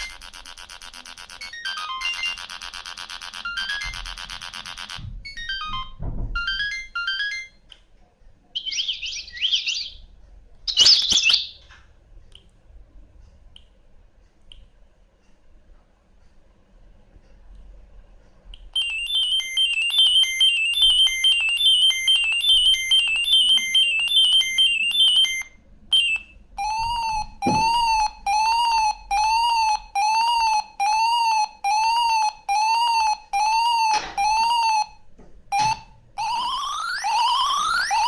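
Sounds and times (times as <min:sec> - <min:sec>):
fast beeping ringtone melody: 0:00.0 - 0:07.6, 0:18.8 - 0:38.0.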